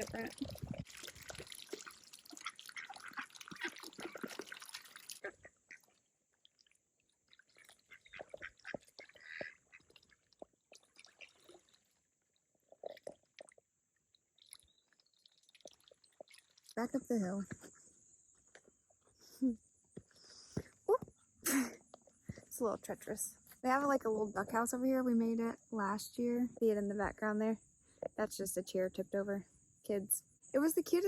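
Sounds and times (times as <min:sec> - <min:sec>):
ducks dabbling and splashing: 0:00.0 - 0:19.0
ducks quacking softly: 0:02.3 - 0:04.2, 0:07.5 - 0:10.2.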